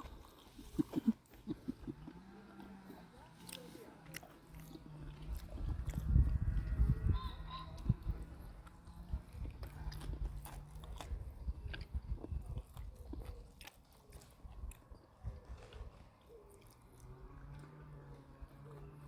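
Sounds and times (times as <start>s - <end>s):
person biting and chewing: 0.0s - 2.2s, 3.4s - 6.4s, 8.6s - 14.8s.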